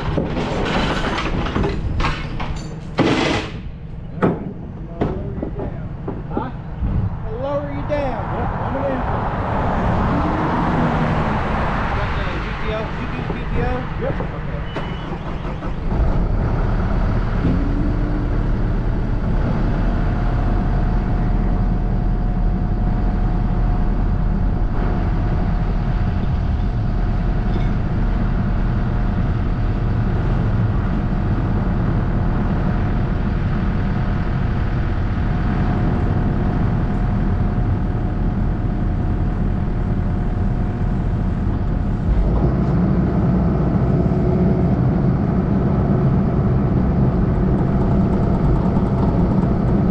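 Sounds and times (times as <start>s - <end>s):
heavy diesel engine running: 0.0s - 49.9s
thin steady whine: 17.0s - 42.3s.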